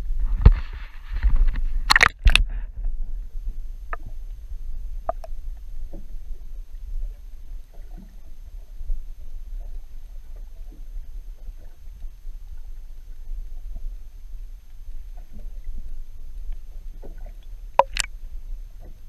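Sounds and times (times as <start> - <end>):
boat engine low rumble: 0.0 - 19.0
water splashes and knocks: 16.7 - 18.2
sharp click: 17.8 - 18.1.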